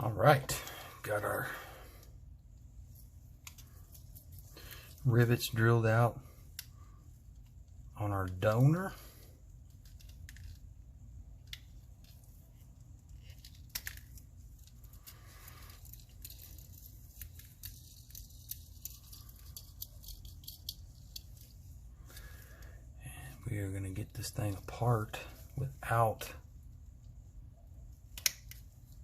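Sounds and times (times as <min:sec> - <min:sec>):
low steady hum: 0:00.0 - 0:29.0
toy car clicks and scrapes: 0:15.7 - 0:21.6.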